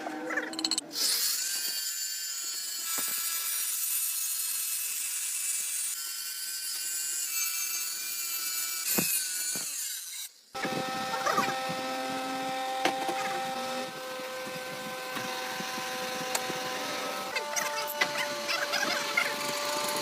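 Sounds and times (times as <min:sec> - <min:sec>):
power tool whining and cutting: 0:00.9 - 0:20.0.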